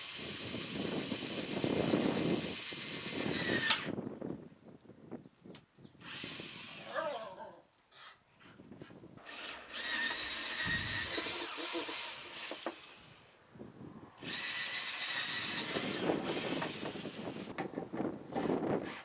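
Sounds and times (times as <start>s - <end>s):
power tool motor whining: 0.0s - 3.9s, 6.0s - 7.0s, 9.2s - 13.3s, 14.2s - 17.6s.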